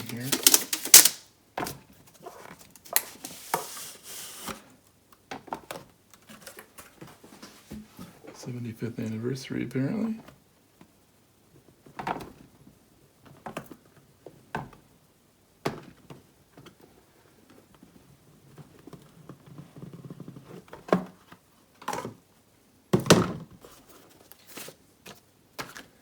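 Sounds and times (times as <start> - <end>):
paper rustling: 0.0 - 1.2, 2.2 - 4.6.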